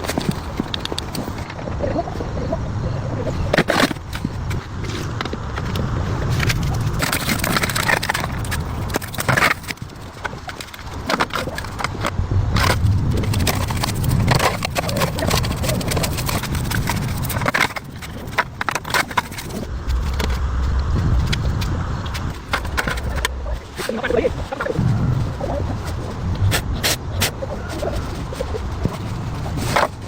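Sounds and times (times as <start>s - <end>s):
low rumble: 19.6s - 28.2s.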